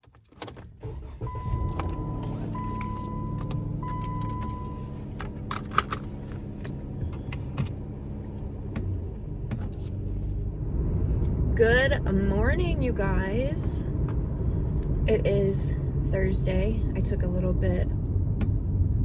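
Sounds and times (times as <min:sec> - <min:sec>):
car engine running: 0:00.0 - 0:19.0
car warning chime: 0:01.3 - 0:05.1.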